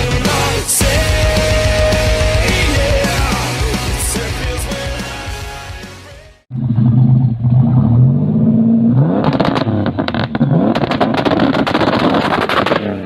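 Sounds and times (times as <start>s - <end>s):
sharp engine crackles: 6.5s - 13.0s
car engine revving: 6.6s - 13.0s.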